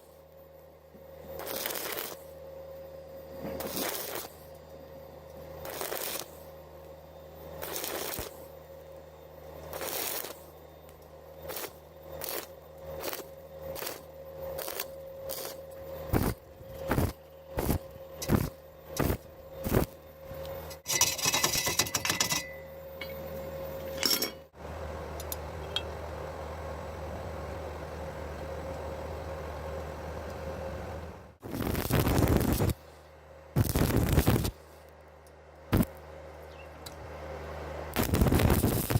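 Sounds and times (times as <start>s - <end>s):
welding arc crackling: 1.2s - 2.4s, 3.5s - 4.6s, 5.4s - 22.2s, 31.4s - 32.8s, 33.6s - 34.9s, 35.7s - 36.0s, 37.9s - 38.9s.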